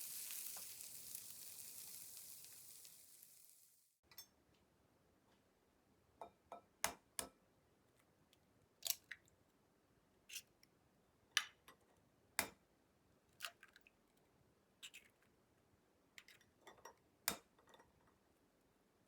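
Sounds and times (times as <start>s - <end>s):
kitchen tool clicks and taps: 17.3s - 17.8s.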